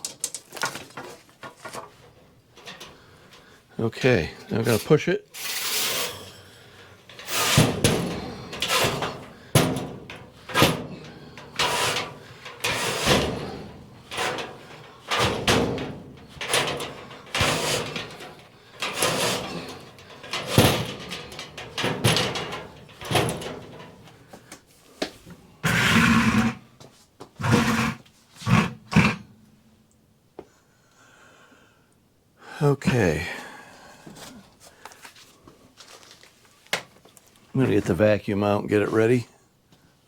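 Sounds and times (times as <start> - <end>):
brush scraping inside metal pipe: 4.5 - 24.2, 25.6 - 26.6, 27.4 - 29.3.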